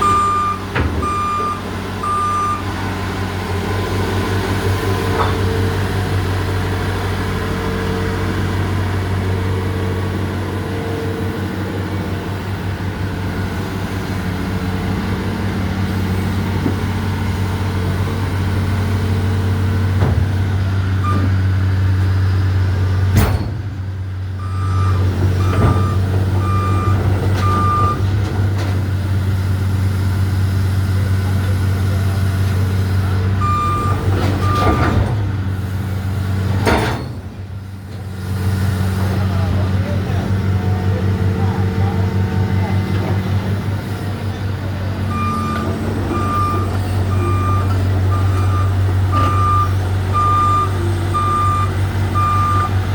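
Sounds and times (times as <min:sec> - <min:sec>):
travel alarm beeping: 0:00.0 - 0:02.7, 0:24.4 - 0:28.0, 0:33.4 - 0:34.8, 0:45.1 - 0:52.8
excavator diesel engine running: 0:00.0 - 0:52.9.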